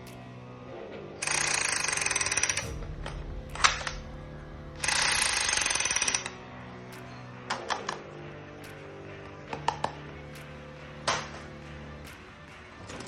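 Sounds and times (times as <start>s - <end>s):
toy rifle rapid-fire bursts: 1.2s - 2.6s, 4.8s - 6.4s.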